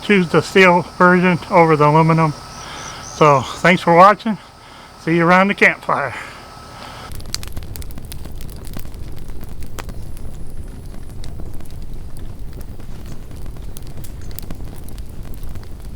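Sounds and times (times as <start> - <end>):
sharp crackles and clicks: 6.9 - 15.9
wind buffeting microphone: 7.0 - 15.9.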